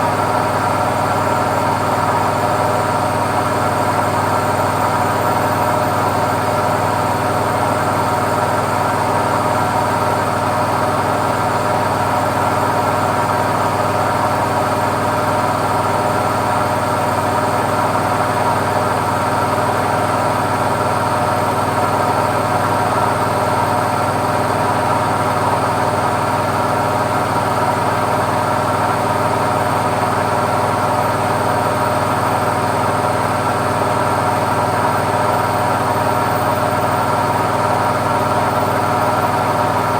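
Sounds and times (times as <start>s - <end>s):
washing machine spinning: 0.0s - 39.9s.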